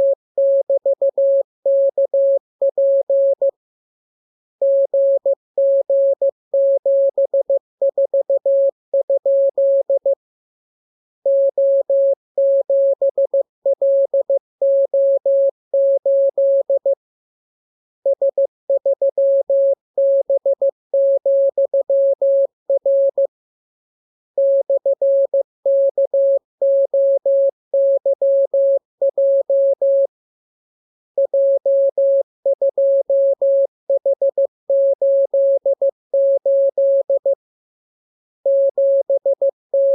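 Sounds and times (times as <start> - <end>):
morse code beeps: 38.5 - 39.9.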